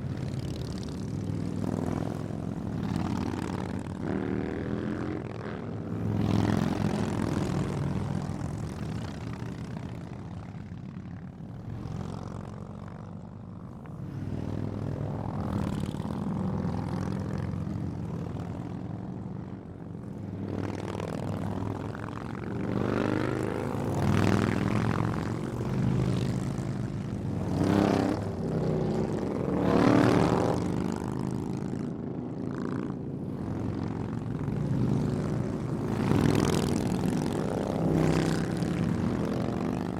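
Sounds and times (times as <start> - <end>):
motorcycles passing by fast: 0.0 - 39.9.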